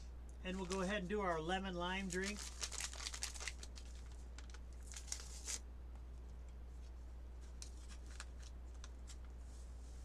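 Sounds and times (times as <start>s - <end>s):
steady low hum: 0.0s - 10.0s
packet crinkling and clicks: 0.5s - 0.9s, 2.0s - 5.6s, 7.5s - 9.3s.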